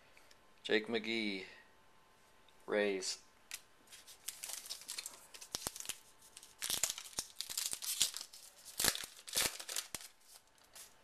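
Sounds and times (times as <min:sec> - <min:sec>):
wrapper crinkling and tearing: 0:03.9 - 0:11.0.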